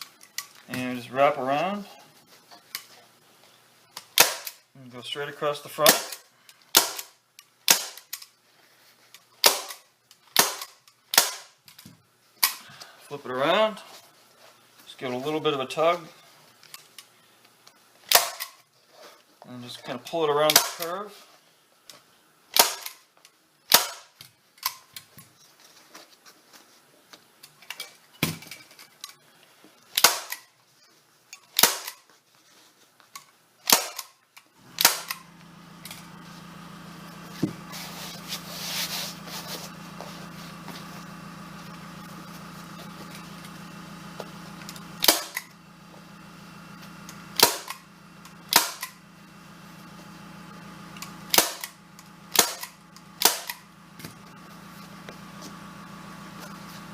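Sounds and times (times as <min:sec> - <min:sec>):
staple gun firing: 0:04.1 - 0:04.6, 0:05.8 - 0:07.1, 0:07.7 - 0:08.2, 0:09.4 - 0:09.8, 0:10.4 - 0:11.5, 0:18.1 - 0:18.6, 0:20.5 - 0:20.9, 0:22.5 - 0:23.0, 0:23.7 - 0:24.8, 0:30.0 - 0:30.4, 0:31.6 - 0:32.0, 0:33.7 - 0:34.1, 0:34.8 - 0:35.2, 0:45.0 - 0:45.5, 0:47.4 - 0:47.8, 0:48.5 - 0:49.0, 0:51.3 - 0:53.6
steady machine hum: 0:12.0 - 0:18.6, 0:33.4 - 0:56.9.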